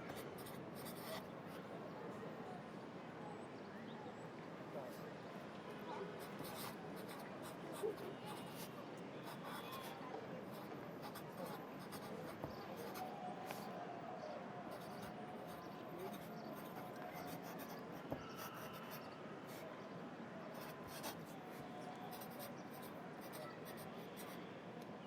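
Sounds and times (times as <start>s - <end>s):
city traffic ambience: 0.0s - 25.0s
pencil writing on paper: 0.1s - 1.2s, 6.2s - 13.6s, 14.7s - 19.6s, 20.6s - 21.4s, 22.1s - 24.4s.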